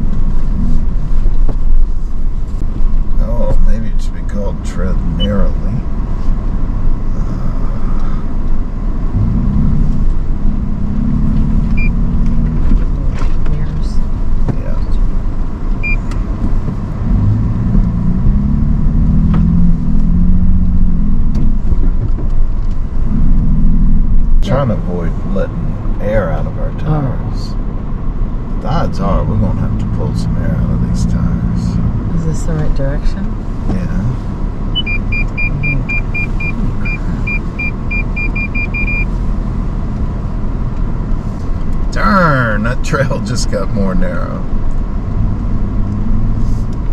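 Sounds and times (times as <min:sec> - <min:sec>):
rumble of driving on rough trail: 0:00.0 - 0:46.9
vehicle engine under load: 0:00.0 - 0:46.9
vehicle warning beeps: 0:05.1 - 0:05.5, 0:11.7 - 0:12.0, 0:15.8 - 0:16.1, 0:34.2 - 0:39.2.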